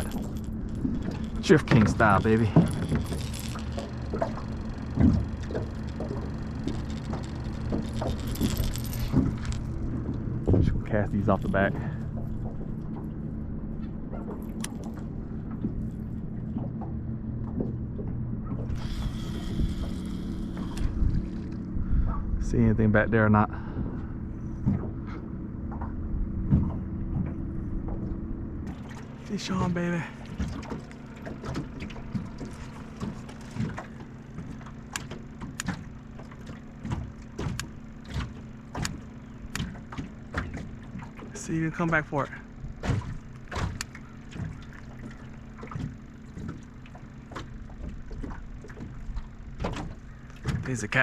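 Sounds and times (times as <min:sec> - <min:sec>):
fishing reel being cranked: 0:00.0 - 0:09.8, 0:18.7 - 0:21.7
sharp clicks and knocks: 0:00.0 - 0:13.1, 0:28.7 - 0:42.0, 0:42.7 - 0:51.0
small motor humming: 0:00.0 - 0:22.4, 0:26.8 - 0:50.6.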